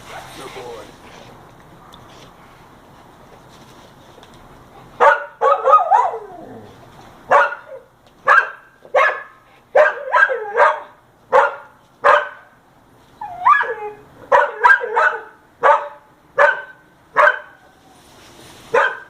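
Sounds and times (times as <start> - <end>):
dog barking: 5.0 - 6.2, 7.3 - 12.6, 14.3 - 17.6, 18.7 - 19.0
dog yelping: 5.0 - 6.7, 7.3 - 12.4, 13.2 - 17.6, 18.7 - 19.0.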